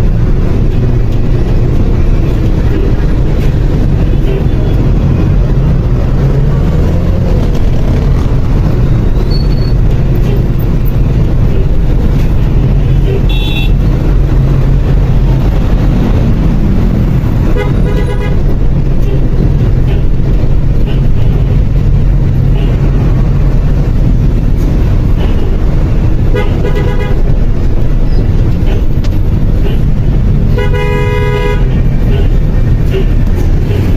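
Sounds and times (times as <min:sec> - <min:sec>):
city street traffic rumble: 0:00.0 - 0:33.9
car horn honking: 0:12.8 - 0:13.9, 0:17.4 - 0:19.2, 0:25.2 - 0:27.4, 0:29.6 - 0:33.9.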